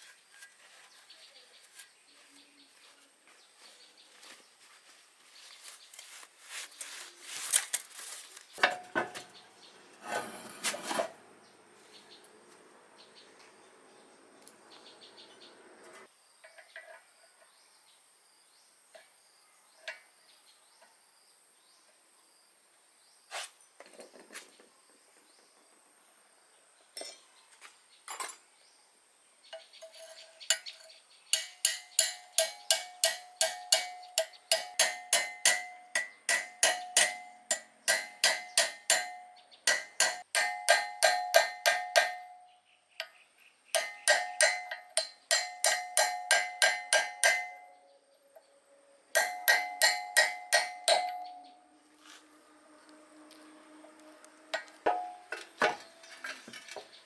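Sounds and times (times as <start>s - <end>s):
hammer striking metal: 31.3s - 42.5s, 43.8s - 47.8s, 49.2s - 51.5s, 54.5s - 56.0s.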